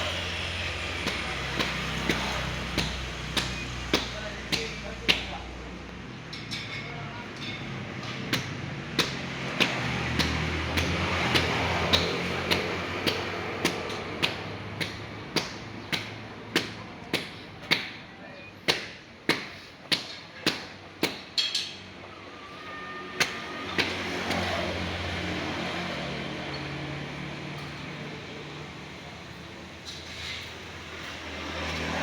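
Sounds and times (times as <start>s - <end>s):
motor vehicle engine humming: 0.0s - 6.2s
sharp tapping knocks: 0.9s - 5.5s, 7.6s - 18.0s.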